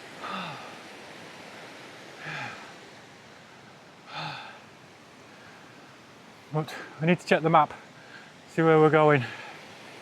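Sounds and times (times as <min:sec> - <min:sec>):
steady background hiss: 0:00.0 - 0:10.0
man's breathy exhalations: 0:00.2 - 0:00.8.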